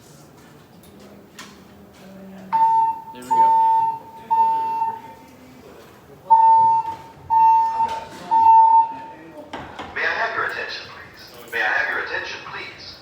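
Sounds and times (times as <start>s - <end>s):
fire alarm beeping: 2.5s - 5.2s, 6.3s - 9.3s.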